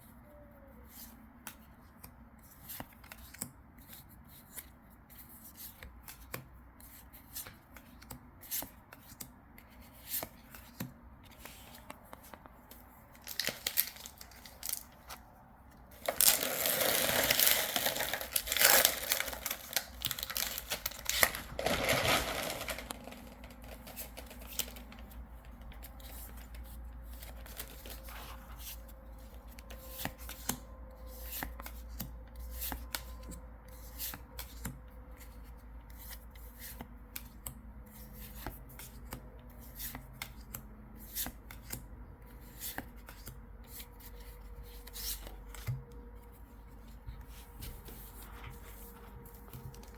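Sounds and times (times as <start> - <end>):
trading cards being handled: 0.8 - 31.8
foil wrapper tearing and crinkling: 16.0 - 24.8.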